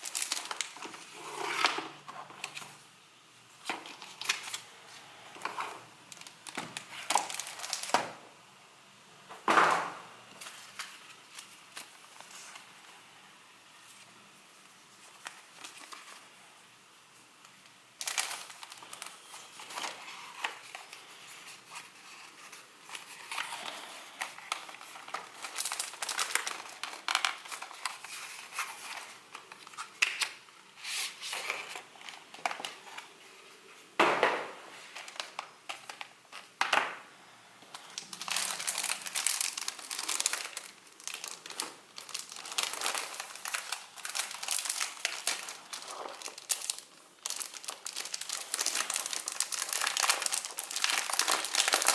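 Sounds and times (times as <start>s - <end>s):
packaging crackles: 0.0s - 1.8s, 5.4s - 8.2s, 18.0s - 30.4s, 34.9s - 36.6s, 37.7s - 51.9s
packaging crinkling and rustling: 0.0s - 2.8s, 3.6s - 8.2s, 15.0s - 16.4s, 17.4s - 37.0s, 37.6s - 51.9s.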